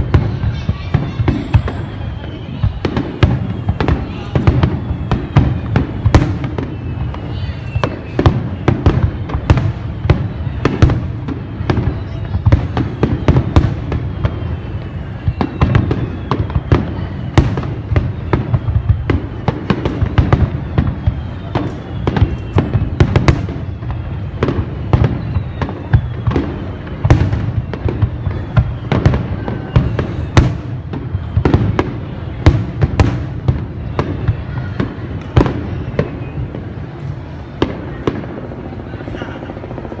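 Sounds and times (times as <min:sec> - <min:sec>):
fireworks bangs and crackles: 0:00.0 - 0:40.0
fireworks falling whistles: 0:00.0 - 0:40.0.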